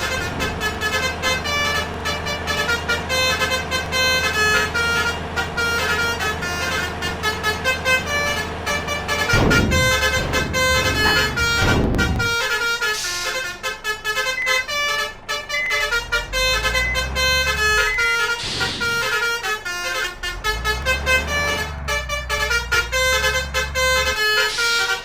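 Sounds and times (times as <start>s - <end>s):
multi-tone horn melody: 0.0s - 25.0s
vehicle engine rumbling: 0.0s - 25.0s.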